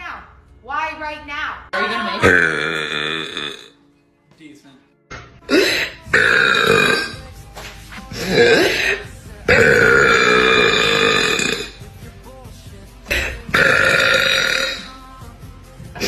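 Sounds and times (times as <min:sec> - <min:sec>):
woman belching loudly: 0:01.8 - 0:03.8, 0:05.5 - 0:07.2, 0:08.2 - 0:11.8, 0:13.1 - 0:15.0.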